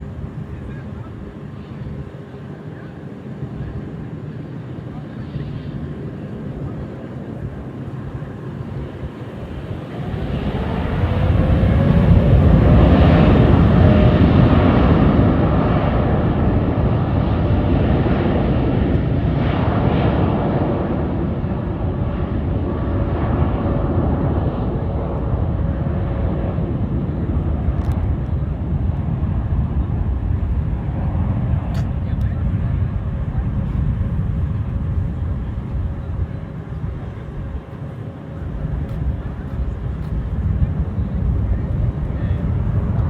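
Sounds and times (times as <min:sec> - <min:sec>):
faint engine whine: 0:00.0 - 0:43.0
jet engine rumble: 0:00.0 - 0:43.0.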